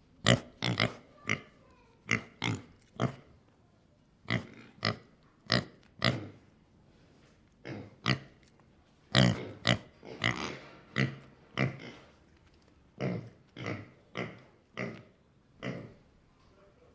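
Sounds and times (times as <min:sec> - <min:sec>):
pig grunting: 0:00.2 - 0:03.3, 0:07.6 - 0:08.3, 0:09.1 - 0:12.1, 0:13.0 - 0:16.0.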